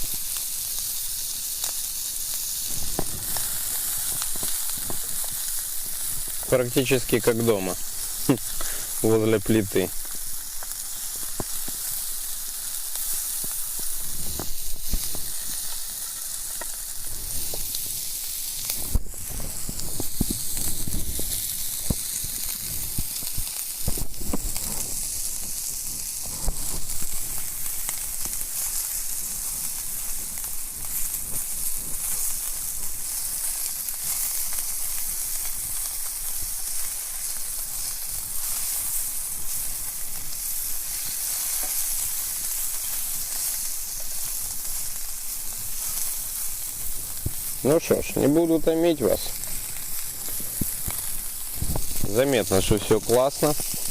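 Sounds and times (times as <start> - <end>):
food sizzling in a frying pan: 0.0 - 53.9.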